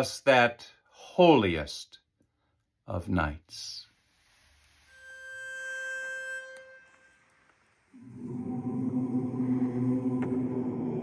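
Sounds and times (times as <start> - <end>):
pitch pipe note: 4.9 - 7.5
a cappella chorus singing: 8.0 - 11.0.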